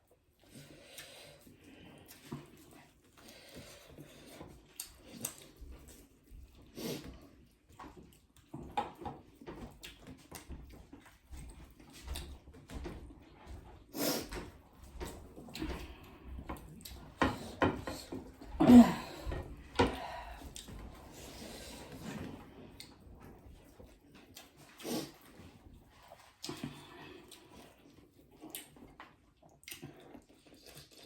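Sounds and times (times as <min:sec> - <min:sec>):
chewing food: 0:00.0 - 0:31.0.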